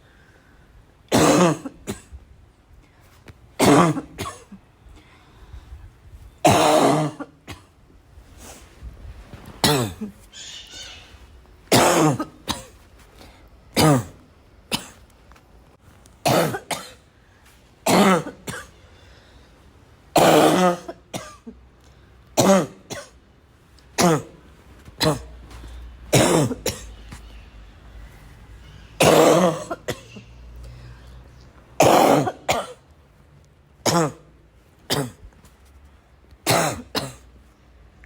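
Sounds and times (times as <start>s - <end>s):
person coughing: 1.1s - 2.2s, 3.6s - 4.6s, 6.4s - 7.7s, 9.6s - 10.3s, 11.7s - 12.8s, 13.8s - 15.0s, 16.2s - 17.0s, 17.9s - 18.8s, 20.1s - 21.6s, 22.4s - 23.2s, 24.0s - 24.4s, 25.0s - 27.0s, 29.0s - 30.4s, 31.8s - 32.8s, 33.8s - 34.3s, 34.9s - 35.3s, 36.5s - 37.3s.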